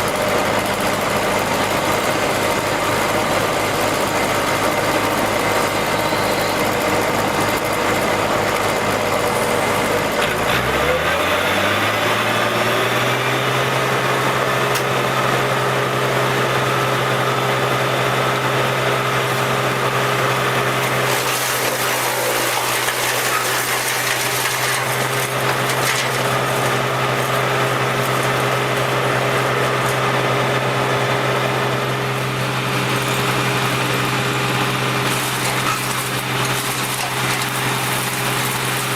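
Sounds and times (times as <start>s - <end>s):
engine running and speeding up: 0.0s - 38.9s.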